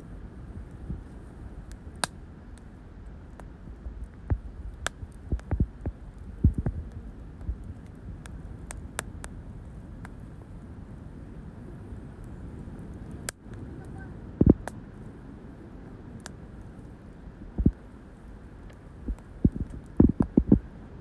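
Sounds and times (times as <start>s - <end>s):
campfire crackling and popping: 0.0s - 21.0s
steady low rumble: 0.0s - 21.0s
dull low thumps: 3.6s - 7.6s, 14.4s - 14.6s, 17.4s - 17.8s, 19.0s - 20.7s.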